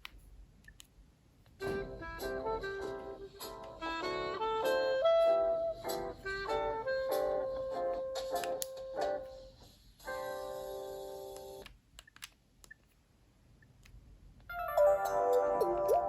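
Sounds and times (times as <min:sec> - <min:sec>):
phone ringtone melody: 0:14.5 - 0:16.0.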